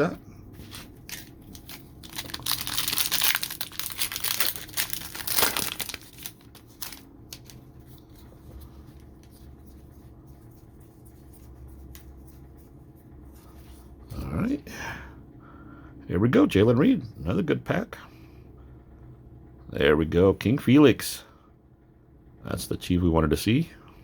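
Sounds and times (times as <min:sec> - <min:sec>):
plastic wrapper crinkling: 0:00.6 - 0:09.7
wrapper ripping: 0:00.7 - 0:08.2.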